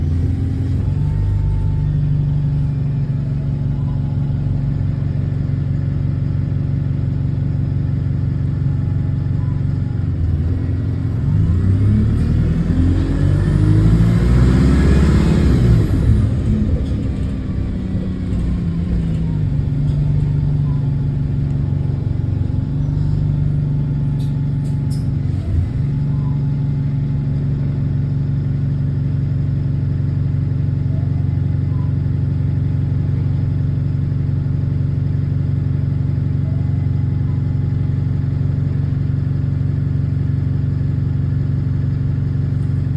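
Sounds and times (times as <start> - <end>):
diesel bus engine revving: 0.0 - 28.2.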